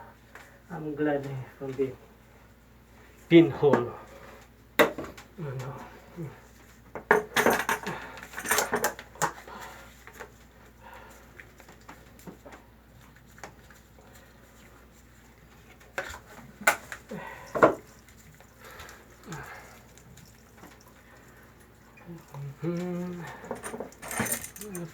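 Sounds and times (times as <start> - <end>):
metal tools clinking and clattering: 7.1 - 9.0, 23.1 - 24.9.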